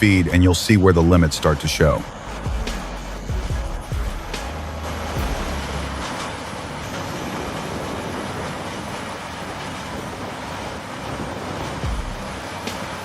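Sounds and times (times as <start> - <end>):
wood chipper grinding wood: 0.0 - 13.0
heavy low thuds: 1.7 - 6.6, 11.8 - 12.4.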